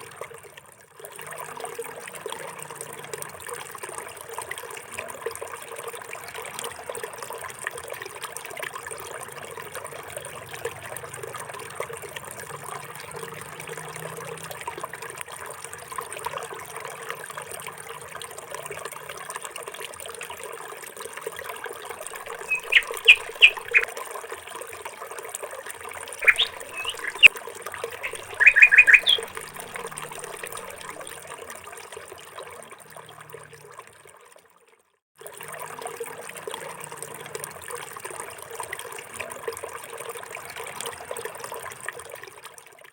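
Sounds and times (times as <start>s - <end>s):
water trickling: 0.0s - 42.8s
small bird chirping: 22.2s - 23.9s, 26.2s - 27.3s, 28.0s - 30.4s.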